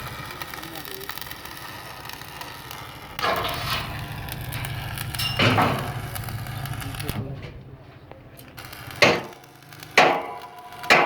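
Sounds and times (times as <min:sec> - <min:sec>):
steady low hum: 0:01.5 - 0:08.7
metal parts scraping and clanking: 0:03.0 - 0:07.6
metallic ring: 0:03.2 - 0:06.7.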